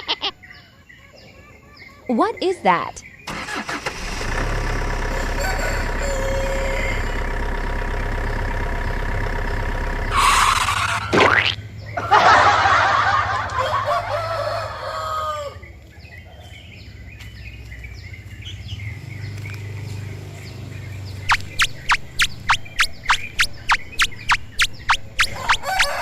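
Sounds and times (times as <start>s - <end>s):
rooster crowing: 4.9s - 7.8s, 12.0s - 15.8s, 25.3s - 26.0s
short rising chirps: 8.3s - 12.0s, 21.2s - 26.0s.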